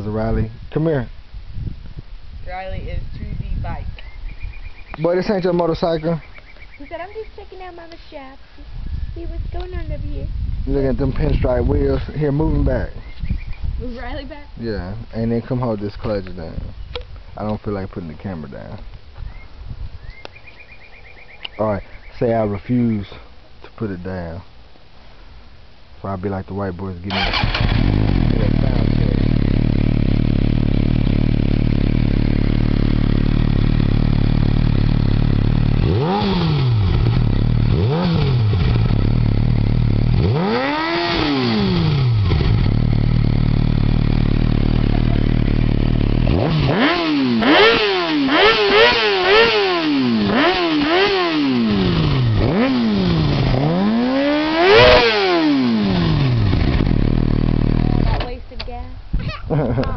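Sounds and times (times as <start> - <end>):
motorcycle engine idling and revving: 2.5 - 8.4, 27.1 - 59.9.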